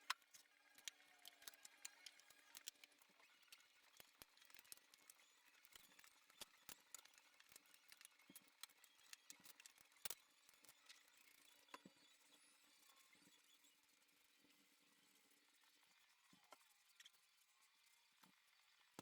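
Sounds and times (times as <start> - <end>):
faint clicks and taps from handling: 0.0 - 12.0.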